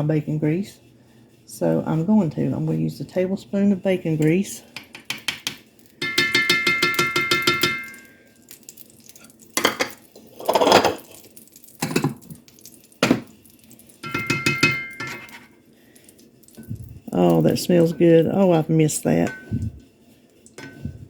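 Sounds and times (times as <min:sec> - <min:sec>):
utensils knocking: 0:04.8 - 0:08.0, 0:14.0 - 0:15.5, 0:20.6 - 0:20.9
metal spoon clinking in container: 0:06.0 - 0:08.3, 0:14.0 - 0:15.5.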